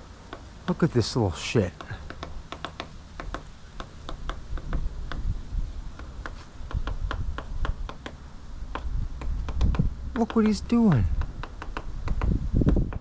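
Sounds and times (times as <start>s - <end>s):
woodpecker tapping on wood: 0.0s - 13.0s.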